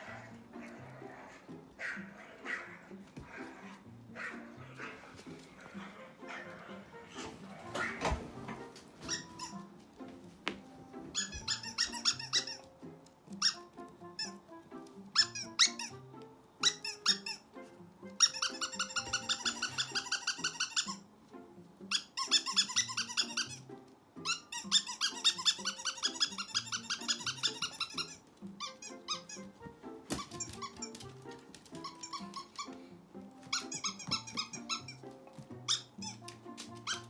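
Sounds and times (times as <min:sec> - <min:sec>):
background music: 0:00.0 - 0:37.0
rapid high squeaks: 0:09.0 - 0:09.6, 0:11.1 - 0:12.6, 0:18.2 - 0:21.0, 0:21.9 - 0:23.6, 0:24.3 - 0:29.6, 0:30.2 - 0:32.7, 0:33.5 - 0:35.0.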